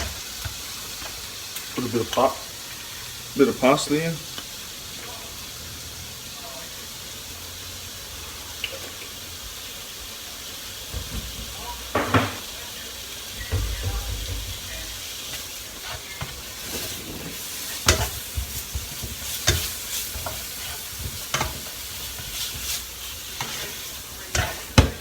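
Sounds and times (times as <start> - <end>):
food sizzling in a frying pan: 0.0 - 25.0
utensil knocking against pan: 10.9 - 12.5, 13.4 - 15.4, 17.8 - 20.4, 24.4 - 25.0.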